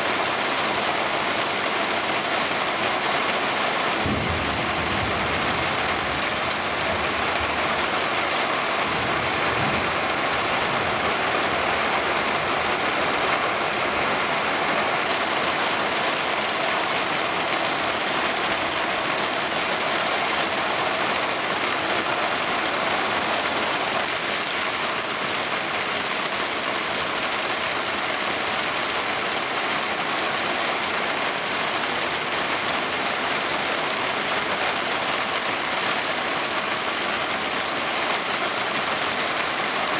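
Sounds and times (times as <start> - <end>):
heavy rain hiss: 0.0 - 39.9.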